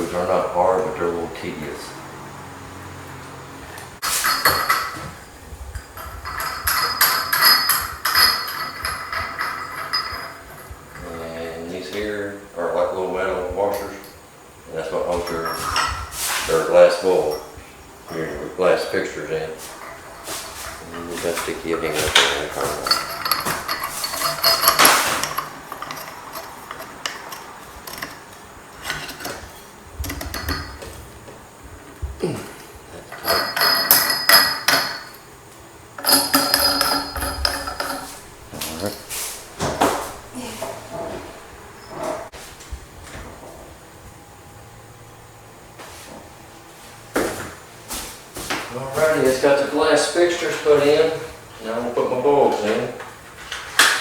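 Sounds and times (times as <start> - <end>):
metal parts clinking together: 5.8 - 11.2, 19.6 - 31.0, 32.6 - 35.3, 36.0 - 39.2
metal screws ticking: 21.7 - 30.9, 33.0 - 35.2, 36.0 - 38.3.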